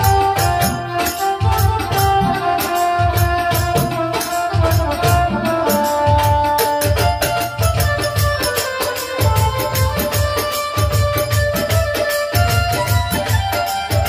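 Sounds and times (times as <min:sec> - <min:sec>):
held melody line: 0:00.0 - 0:14.0.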